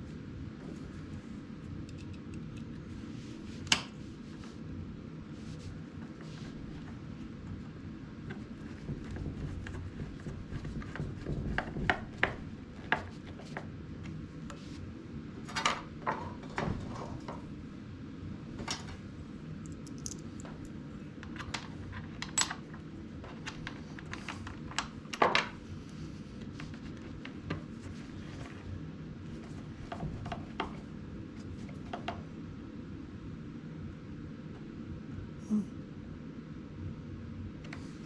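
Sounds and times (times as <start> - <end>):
steady low hum: 0.0 - 38.0
small hard objects clicking: 19.7 - 20.4.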